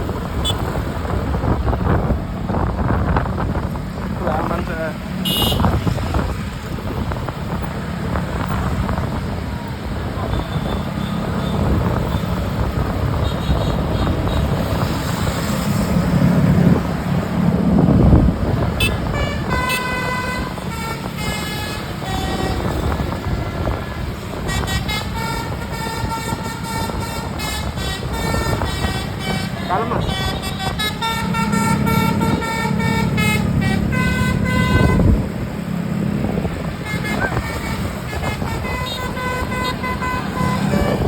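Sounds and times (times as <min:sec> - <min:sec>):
bus engine rumbling: 0:00.0 - 0:41.0
traffic noise: 0:00.0 - 0:41.0
musical air horn tune: 0:18.8 - 0:22.8, 0:24.5 - 0:35.2.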